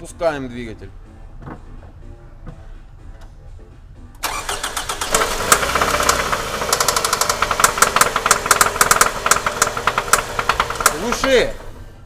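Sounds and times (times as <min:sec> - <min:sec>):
car engine cranking and starting: 0:04.1 - 0:12.0
engine knocking: 0:05.1 - 0:11.8.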